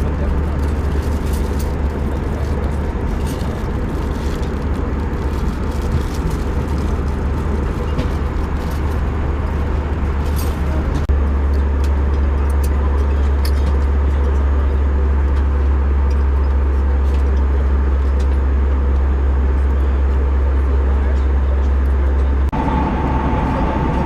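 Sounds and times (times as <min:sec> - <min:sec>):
airplane cabin drone: 0:00.0 - 0:24.0.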